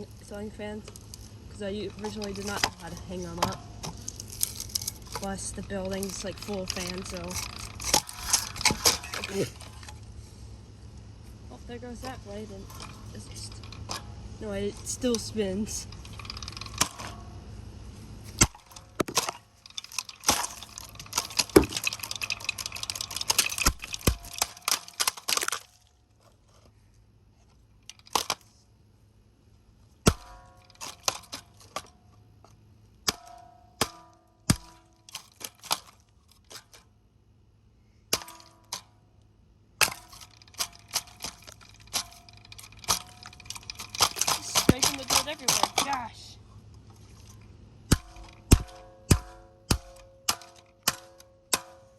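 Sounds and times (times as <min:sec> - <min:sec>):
scraping clatter: 0:00.0 - 0:10.5, 0:11.4 - 0:26.8, 0:39.8 - 0:49.0
sharp knocks and cracks: 0:02.0 - 0:10.0, 0:14.8 - 0:17.3, 0:18.3 - 0:25.9, 0:27.9 - 0:28.4, 0:30.0 - 0:36.9, 0:38.1 - 0:39.0, 0:39.8 - 0:46.1, 0:47.8 - 0:51.9.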